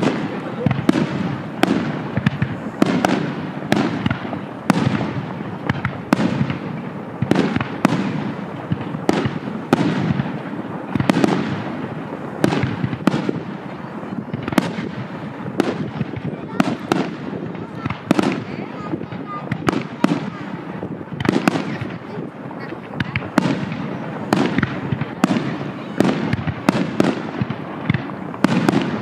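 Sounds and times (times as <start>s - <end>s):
firework shells bursting: 0.0s - 13.7s
firework crackling: 0.0s - 29.0s.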